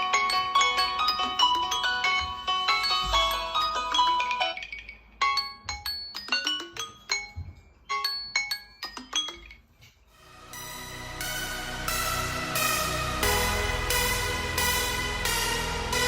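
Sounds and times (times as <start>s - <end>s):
electronic dance-style ringtone: 0.0s - 4.2s, 10.4s - 16.0s
marimba-like ringtone melody: 0.0s - 9.5s.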